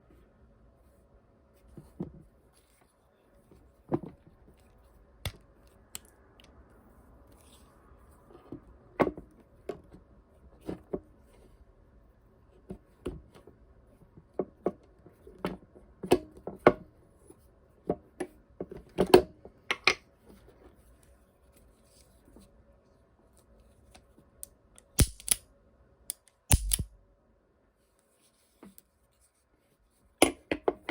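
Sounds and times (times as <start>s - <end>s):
metal clicks and clacks: 26.1s - 26.9s.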